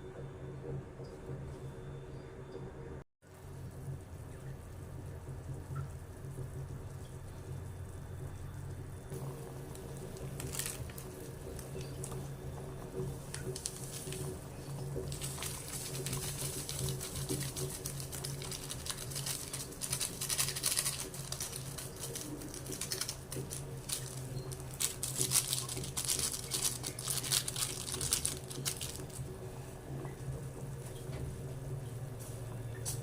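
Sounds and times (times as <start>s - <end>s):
rapid light clicking and rustling: 13.0s - 29.3s.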